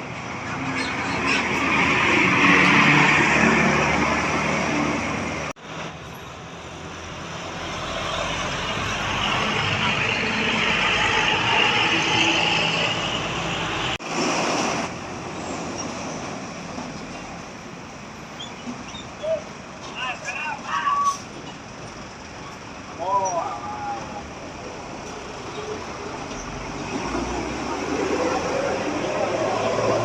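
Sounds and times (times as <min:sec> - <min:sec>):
road traffic: 0:00.0 - 0:30.0
large vehicle passing: 0:24.0 - 0:30.0.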